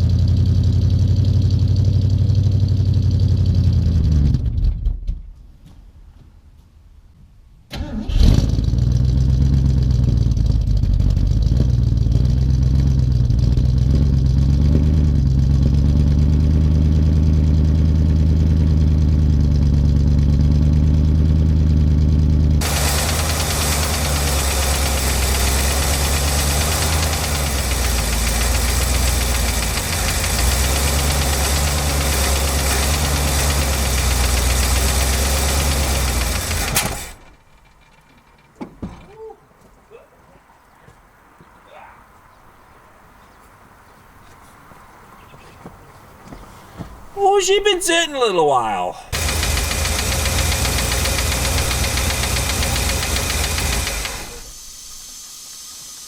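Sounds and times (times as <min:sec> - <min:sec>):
engine running: 0:00.0 - 0:04.9, 0:07.8 - 0:38.5, 0:49.1 - 0:54.7
loud hiss: 0:49.1 - 0:56.0.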